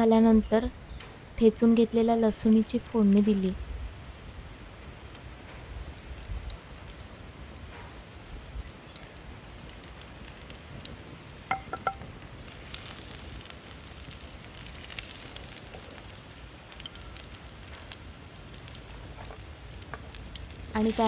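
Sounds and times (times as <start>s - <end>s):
garlic sizzling in hot oil: 2.0s - 21.0s
spoon clinking on pan: 11.5s - 12.1s.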